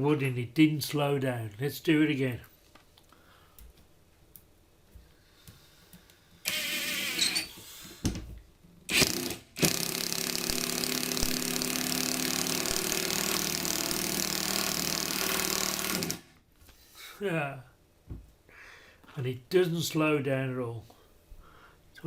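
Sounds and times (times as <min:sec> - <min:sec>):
impact wrench driving screw into wood: 0:06.5 - 0:07.6, 0:08.9 - 0:16.4.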